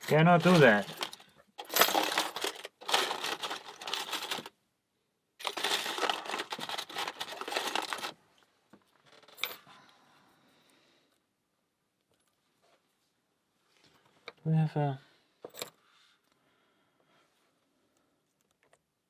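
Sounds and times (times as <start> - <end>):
metal tools jangling: 0.0 - 4.5, 5.4 - 8.1.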